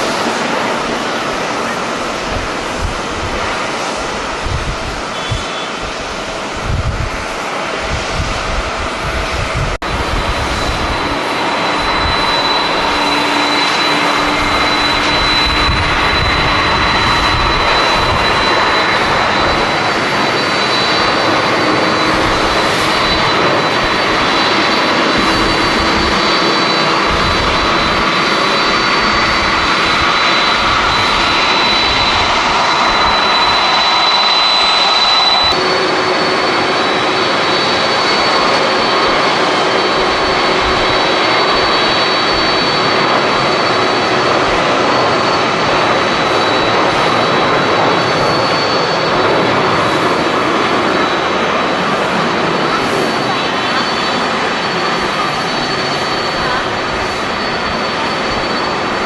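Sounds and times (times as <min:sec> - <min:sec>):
wind buffeting microphone: 0:00.0 - 0:53.6
high engine whine: 0:00.0 - 0:59.0
jet engines running: 0:00.0 - 0:59.0.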